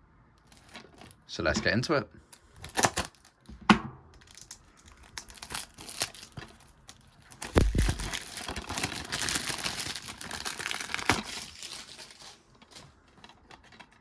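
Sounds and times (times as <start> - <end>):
cellophane crinkling: 0.5 - 1.9, 2.5 - 3.5, 4.2 - 14.0.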